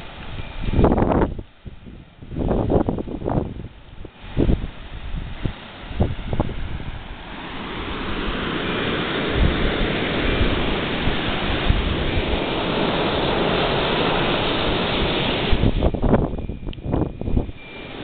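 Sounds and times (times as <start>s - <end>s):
blizzard wind on microphone: 0.0s - 18.0s.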